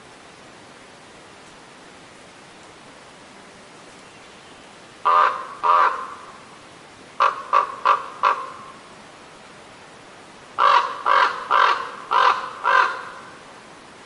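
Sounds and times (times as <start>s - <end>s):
crow cawing: 5.0s - 6.4s, 7.2s - 8.8s, 10.6s - 13.4s.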